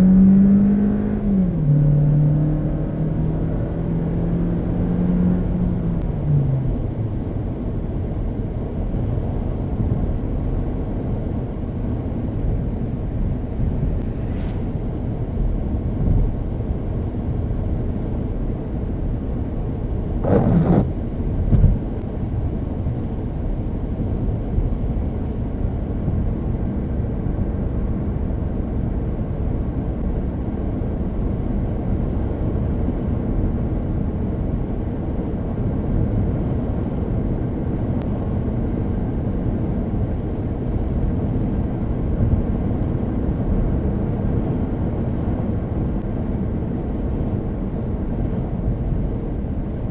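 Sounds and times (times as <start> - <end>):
car road and engine noise: 0.0 - 49.9.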